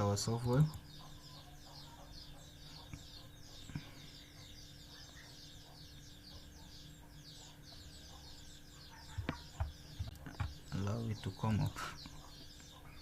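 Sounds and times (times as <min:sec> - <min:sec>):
birds chirping: 0:00.0 - 0:13.0.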